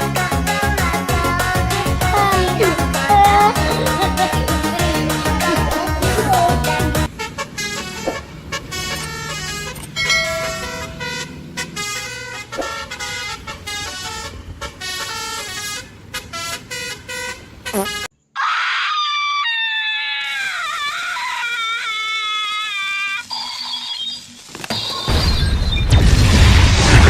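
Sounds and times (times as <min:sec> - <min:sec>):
multi-tone bus air horn melody: 0:00.0 - 0:18.1
sliding wavering pitched sound: 0:08.9 - 0:11.4.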